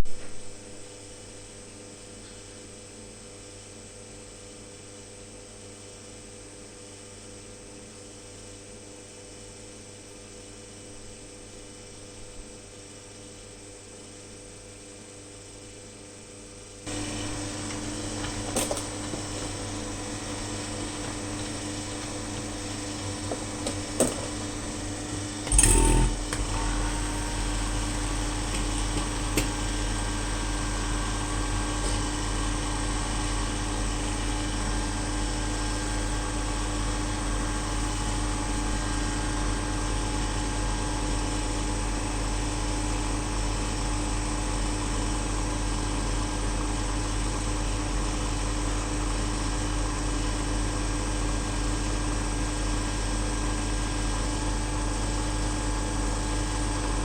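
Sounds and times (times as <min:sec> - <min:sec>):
machine humming: 0:16.9 - 0:42.8.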